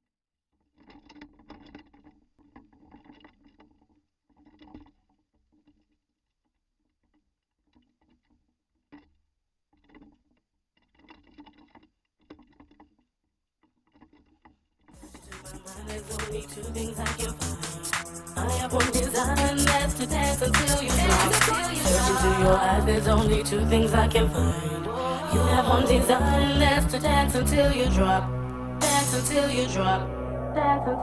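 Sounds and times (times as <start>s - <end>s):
steady low hum: 15.0s - 31.0s.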